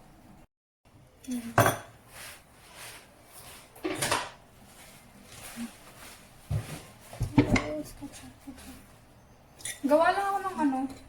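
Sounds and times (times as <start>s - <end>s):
utensils and dishes clinking: 9.6s - 11.0s.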